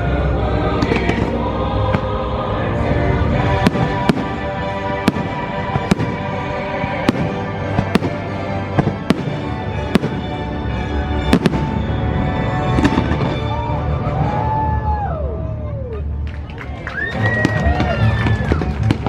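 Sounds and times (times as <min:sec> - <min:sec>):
music over loudspeakers: 0:00.0 - 0:14.4
fireworks bursting in sharp bangs: 0:00.8 - 0:02.2, 0:03.5 - 0:10.5, 0:11.2 - 0:11.9.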